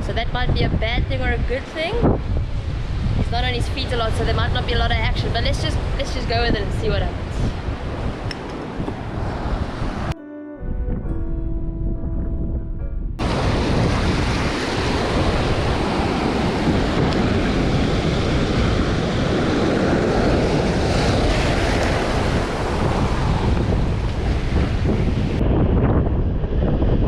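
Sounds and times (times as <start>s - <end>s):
wind buffeting microphone: 0.0s - 27.0s
background music: 10.1s - 13.2s
breaking surf: 13.2s - 27.0s.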